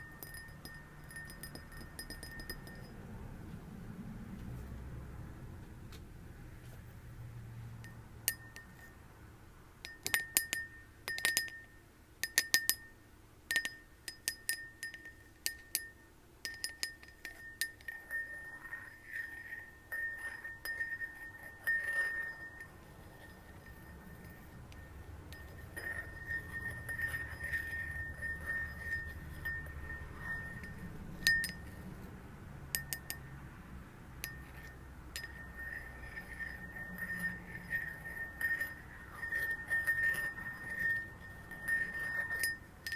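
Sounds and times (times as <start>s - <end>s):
glass tapping and ringing: 0.0s - 3.0s, 7.8s - 9.0s, 9.8s - 32.0s, 32.7s - 33.3s, 34.2s - 42.9s.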